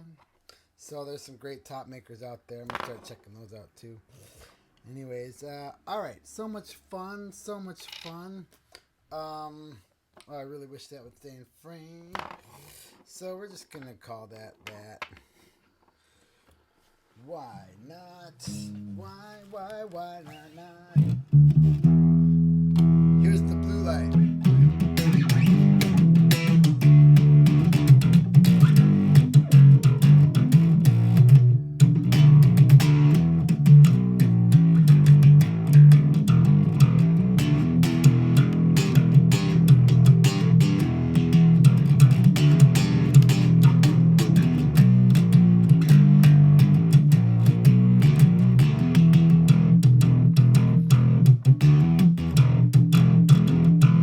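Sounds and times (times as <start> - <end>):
bass guitar line: 18.4 - 19.2, 20.8 - 54.0
guitar-led instrumental music: 21.0 - 54.0.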